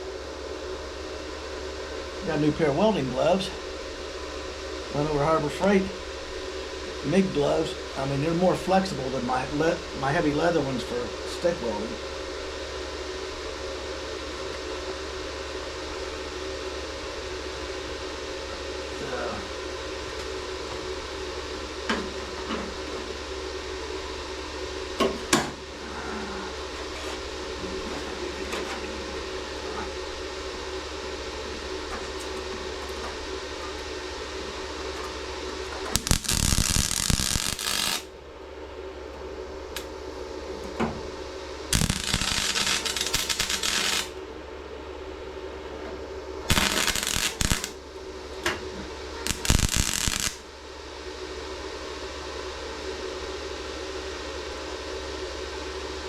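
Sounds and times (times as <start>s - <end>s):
steady hum: 0.0s - 56.0s
welder bursts on steel: 35.9s - 38.1s, 41.7s - 44.1s, 46.5s - 47.8s, 49.3s - 50.4s.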